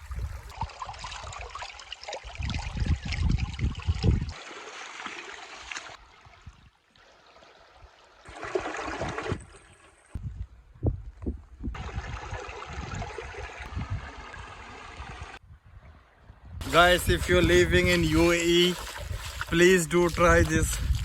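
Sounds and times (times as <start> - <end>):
wind buffeting microphone: 0.0 - 1.5, 2.2 - 4.4, 10.2 - 21.0
stream flowing over rocks: 18.3 - 21.0.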